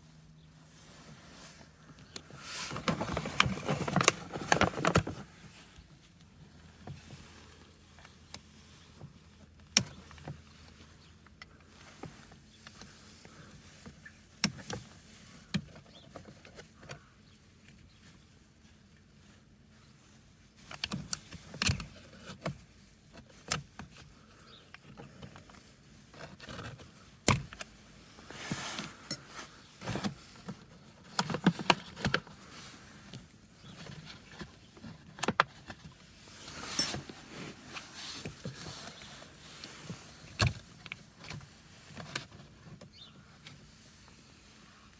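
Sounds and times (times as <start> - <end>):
scraping and rustling: 0.6 - 5.9, 20.0 - 44.9.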